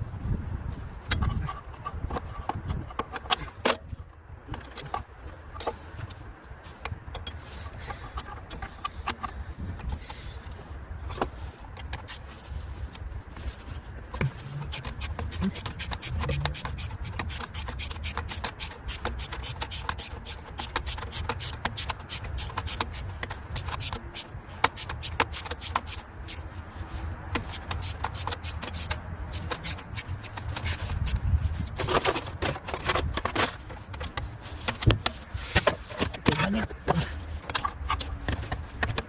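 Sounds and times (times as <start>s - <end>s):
metal tools clinking and scraping: 13.4s - 39.0s.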